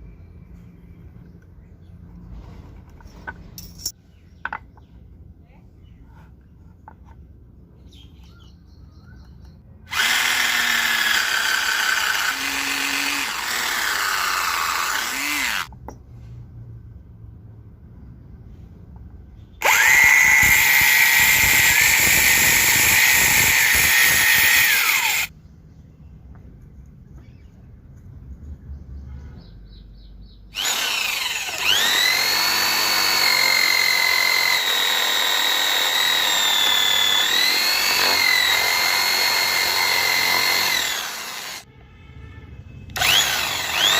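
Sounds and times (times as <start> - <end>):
power tool motor whining: 9.9 - 15.7, 19.6 - 25.3, 30.6 - 41.6, 43.0 - 43.9.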